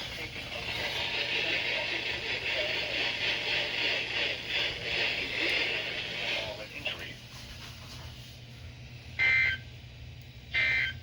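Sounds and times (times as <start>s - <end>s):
radio static hiss: 0.0s - 7.6s.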